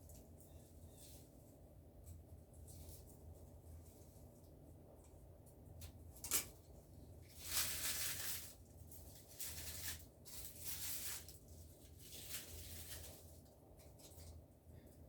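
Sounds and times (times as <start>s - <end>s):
dry rustling: 7.3s - 14.3s.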